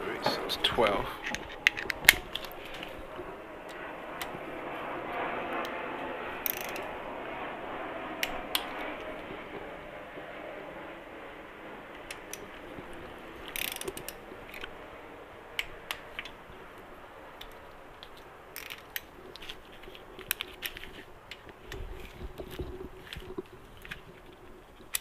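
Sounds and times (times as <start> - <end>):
ratchet wrench clicking: 6.4 - 6.9, 13.5 - 14.2, 18.6 - 18.9.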